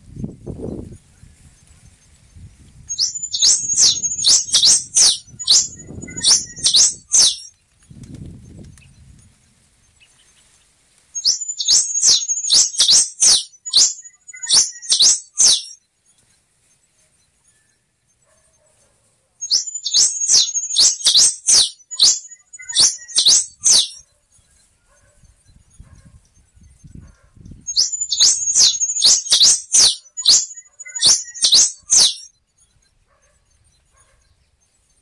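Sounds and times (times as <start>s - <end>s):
thin high tone: 2.9s - 7.5s, 19.4s - 24.0s, 27.7s - 32.3s
finch singing: 2.9s - 7.6s, 11.2s - 15.8s, 19.4s - 24.0s, 27.7s - 32.3s.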